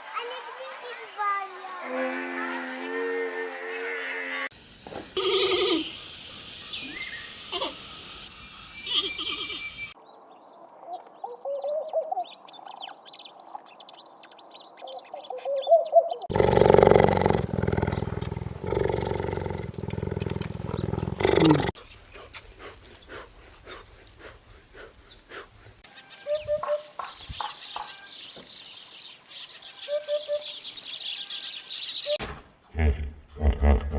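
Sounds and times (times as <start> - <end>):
animal chirping calls: 5.2 - 6.0, 8.8 - 10.0, 29.7 - 30.6
loud animal roar: 16.3 - 21.8.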